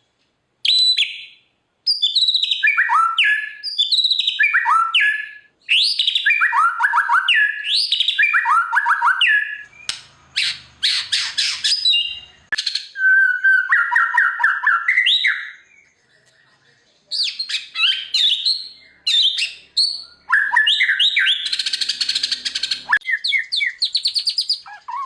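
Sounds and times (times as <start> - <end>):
bird whistling song: 0.6 - 16.5, 17.1 - 25.0
bird harsh chattering: 9.6 - 12.9, 17.1 - 25.0
bird fast repeated notes: 17.6 - 24.5.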